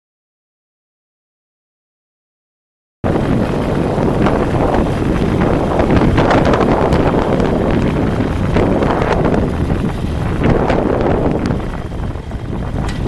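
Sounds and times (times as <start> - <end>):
wind buffeting microphone: 3.0 - 13.0.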